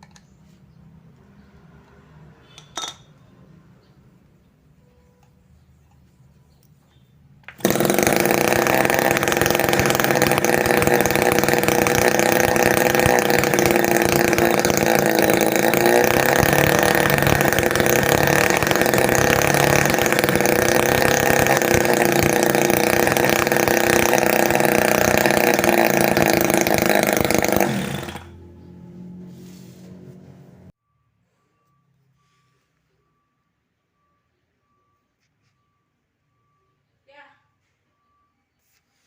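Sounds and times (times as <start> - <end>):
small two-stroke engine running: 7.5 - 29.3.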